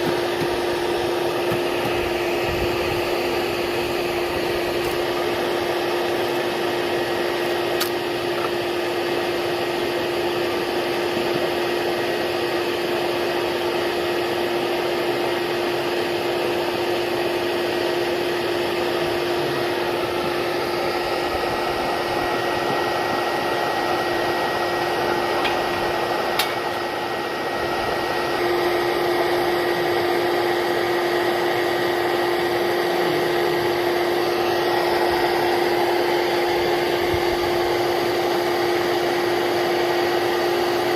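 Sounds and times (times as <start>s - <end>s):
small motor humming and whirring: 0.0s - 40.9s.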